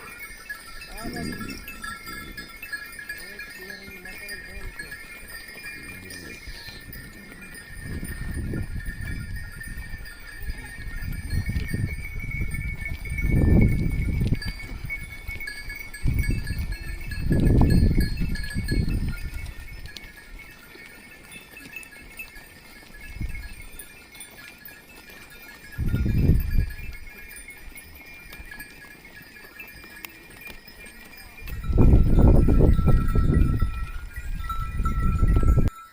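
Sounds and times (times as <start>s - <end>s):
animal bells clinking: 0.0s - 35.9s.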